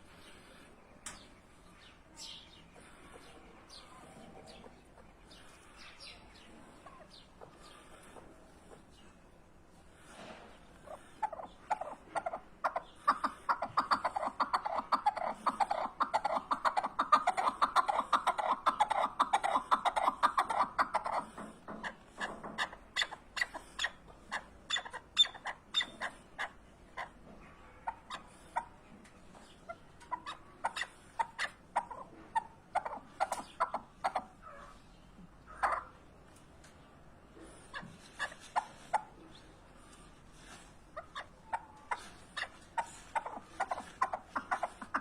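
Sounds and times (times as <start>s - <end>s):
partridge clucking calls: 10.1s - 45.0s.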